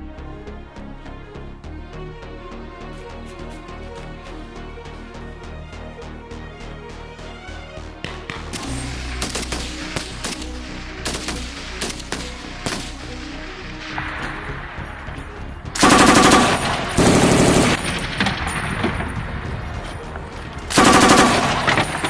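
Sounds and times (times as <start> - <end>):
automatic gunfire bursts: 15.8 - 18.0, 20.7 - 22.0.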